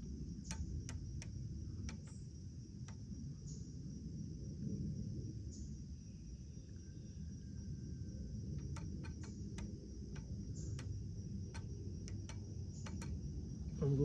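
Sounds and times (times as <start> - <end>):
light detent clicks: 0.0 - 3.1, 8.5 - 14.0.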